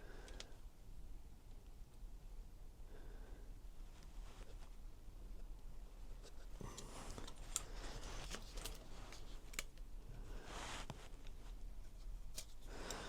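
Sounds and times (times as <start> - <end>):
scraping rustle: 10.3 - 12.1.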